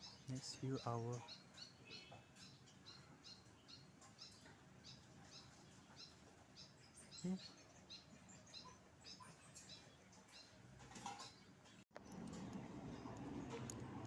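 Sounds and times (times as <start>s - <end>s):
faint bird chirping: 0.0s - 11.8s.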